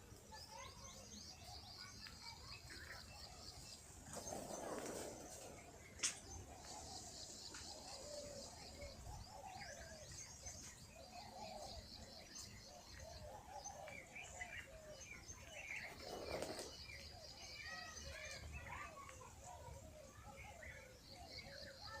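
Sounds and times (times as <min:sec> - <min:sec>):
birds chirping: 0:00.0 - 0:22.0.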